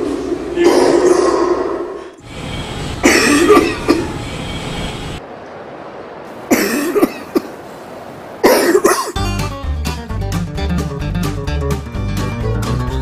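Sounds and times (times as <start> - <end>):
person coughing: 3.0 - 4.1, 6.5 - 7.5, 8.4 - 9.3.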